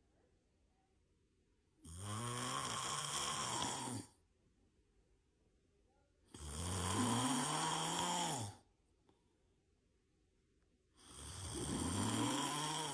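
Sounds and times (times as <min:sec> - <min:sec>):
person snoring: 0:01.8 - 0:04.2, 0:06.3 - 0:08.6, 0:11.0 - 0:12.9.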